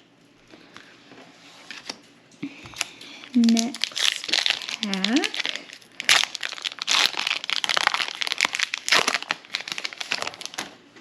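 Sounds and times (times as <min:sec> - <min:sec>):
foil pack crinkling: 0:01.7 - 0:10.8.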